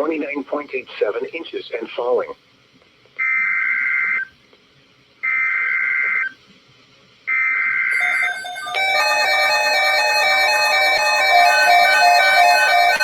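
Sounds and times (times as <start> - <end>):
warbling data tone bursts: 7.9 - 13.0
music: 8.0 - 13.0.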